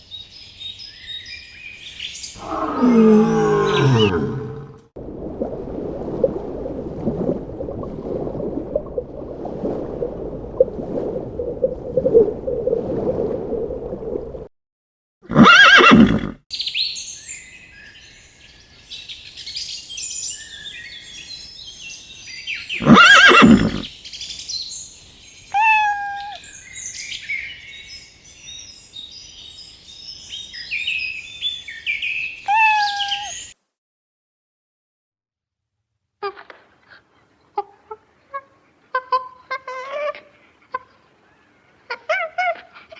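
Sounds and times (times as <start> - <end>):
birdsong: 0.1 - 4.8, 24.6 - 33.5
horse whinnying: 2.4 - 4.8, 15.3 - 16.4, 22.8 - 23.8, 25.6 - 26.4, 32.5 - 33.4.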